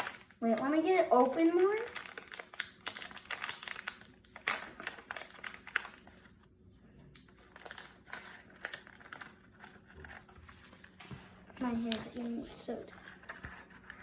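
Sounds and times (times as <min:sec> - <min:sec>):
plastic packaging crinkling: 0:00.0 - 0:14.0.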